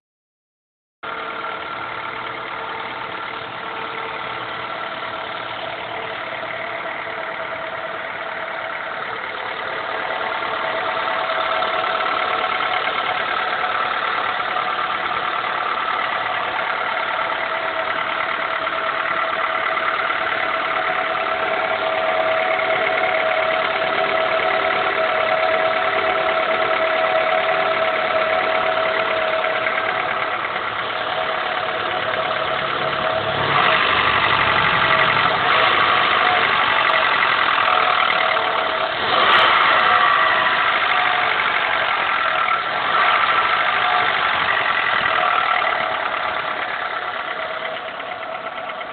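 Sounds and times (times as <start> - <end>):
car engine idling with knocking: 1.0 - 48.9.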